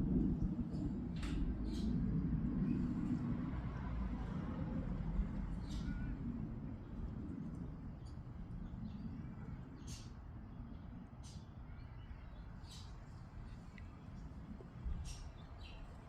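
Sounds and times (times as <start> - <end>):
fighter jets rumbling: 0.0 - 9.3.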